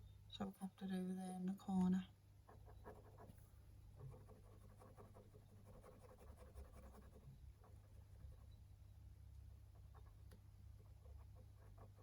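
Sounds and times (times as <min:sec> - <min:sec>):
pen scratching on paper: 0:02.5 - 0:03.3, 0:04.0 - 0:08.1.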